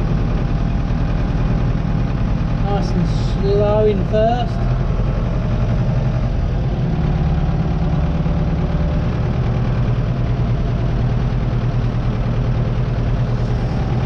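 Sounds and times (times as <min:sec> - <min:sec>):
tractor engine running: 0:00.0 - 0:14.0.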